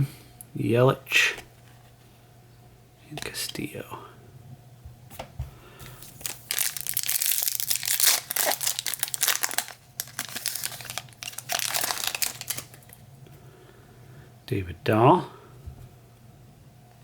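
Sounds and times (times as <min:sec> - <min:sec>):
foil wrapper tearing and crinkling: 0:06.0 - 0:13.0.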